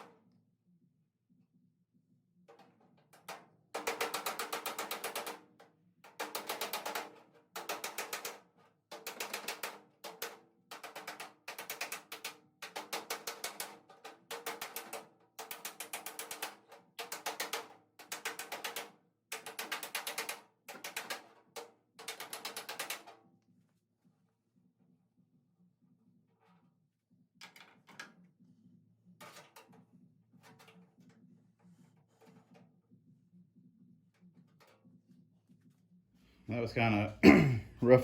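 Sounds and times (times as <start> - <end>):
hammering on sheet metal: 3.2 - 5.5, 6.2 - 23.1.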